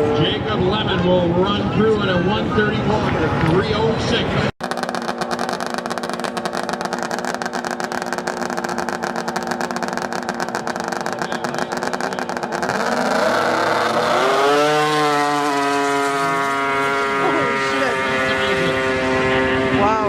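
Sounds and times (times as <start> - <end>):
engine accelerating hard: 0.0 - 20.0
snowmobile engine at high revs: 4.6 - 20.0.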